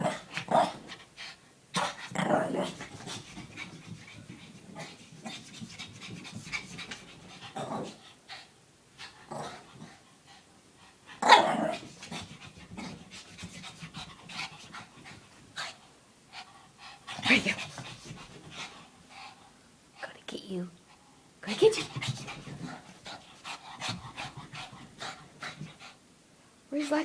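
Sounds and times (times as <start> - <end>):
dog panting hard: 12.0 - 19.6, 20.9 - 26.0.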